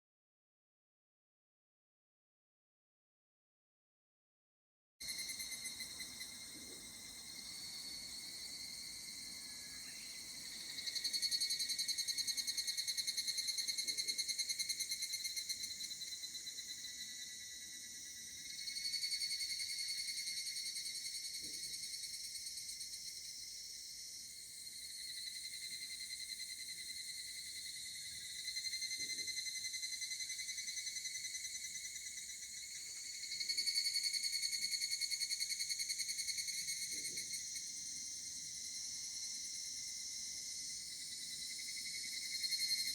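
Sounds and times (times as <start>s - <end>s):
cicadas calling in pulsing trills: 5.0s - 42.9s.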